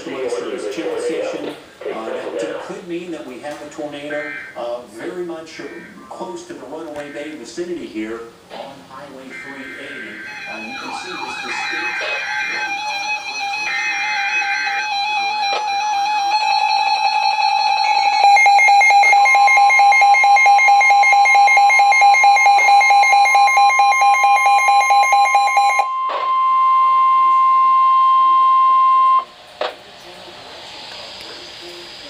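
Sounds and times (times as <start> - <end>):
steady high tone: 9.2 - 29.4
screeching data bursts: 9.3 - 25.8
pulsing electronic alert tones: 10.2 - 27.2.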